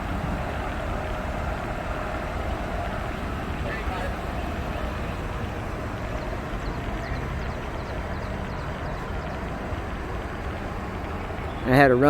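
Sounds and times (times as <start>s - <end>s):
faint low engine hum: 0.0s - 12.0s
traffic rumble: 0.0s - 12.0s.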